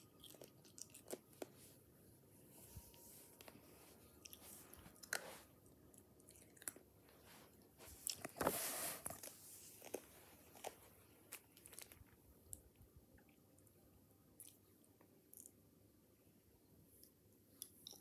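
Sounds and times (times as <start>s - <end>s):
ice being chewed: 0.0s - 1.6s, 4.2s - 6.9s, 9.0s - 12.2s.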